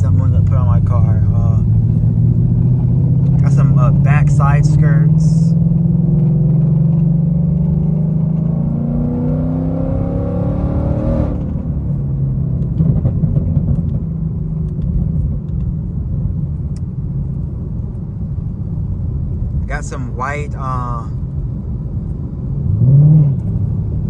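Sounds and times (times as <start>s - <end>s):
car engine revving: 0.0s - 14.0s, 22.6s - 24.0s
car engine low rumble: 0.0s - 24.0s.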